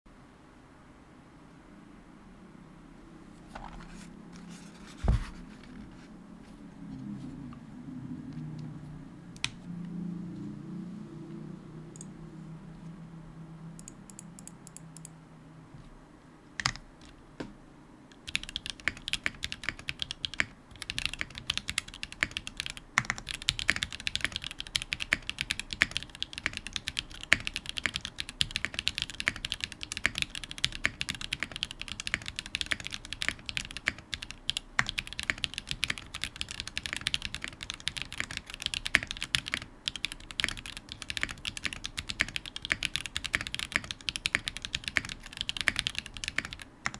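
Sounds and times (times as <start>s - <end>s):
mechanical keyboard typing: 16.6s - 17.1s, 18.2s - 46.9s.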